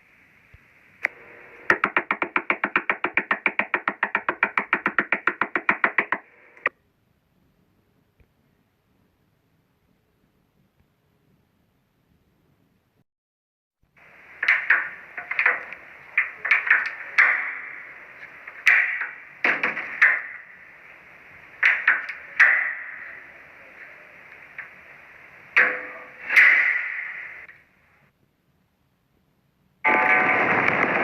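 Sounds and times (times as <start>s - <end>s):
heavy knocking on a door: 1.7s - 6.2s.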